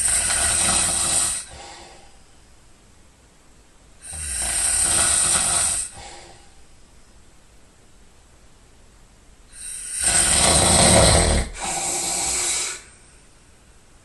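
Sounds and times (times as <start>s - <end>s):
person snoring: 0.0s - 2.0s, 4.0s - 6.4s, 9.5s - 13.0s
breathy rush of air: 5.2s - 6.7s.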